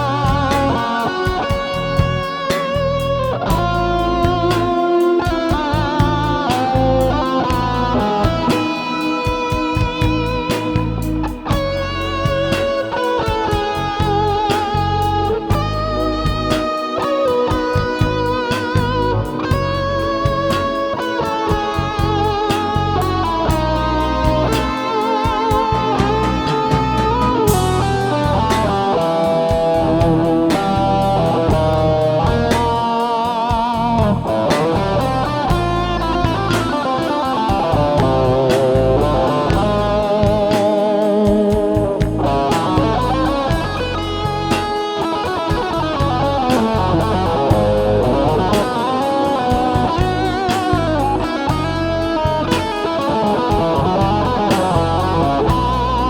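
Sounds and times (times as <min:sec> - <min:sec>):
low bass line: 0:00.0 - 0:04.8, 0:05.5 - 0:08.6, 0:09.6 - 0:16.7, 0:17.8 - 0:20.8, 0:21.6 - 0:24.8, 0:25.5 - 0:32.9, 0:33.6 - 0:36.8, 0:37.6 - 0:40.6, 0:41.8 - 0:44.8, 0:45.6 - 0:48.8, 0:49.5 - 0:52.9, 0:53.5 - 0:56.0
electric guitar lead: 0:00.0 - 0:56.0.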